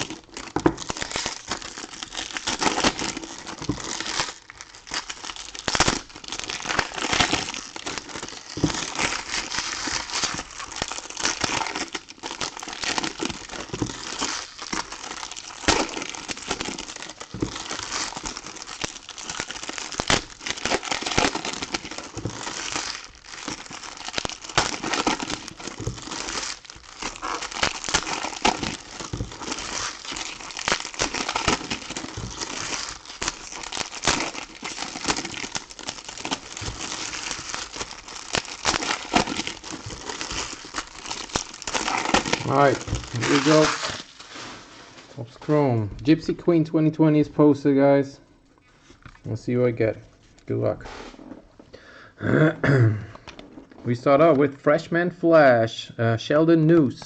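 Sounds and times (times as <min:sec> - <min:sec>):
foil wrappers crinkling: 0:00.0 - 0:45.2.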